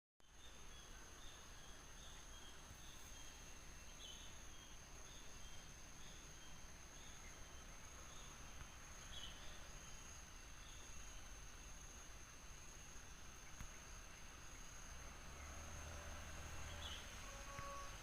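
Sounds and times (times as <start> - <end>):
high-pitched insect drone: 15.0 - 18.0.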